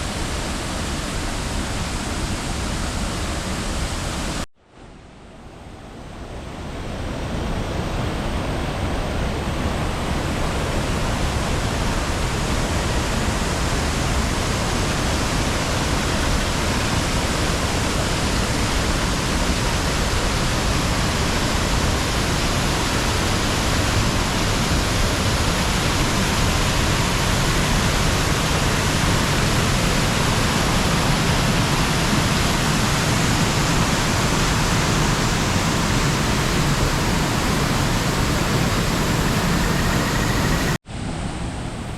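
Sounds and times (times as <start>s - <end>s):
waterfall rushing: 10.4s - 40.8s.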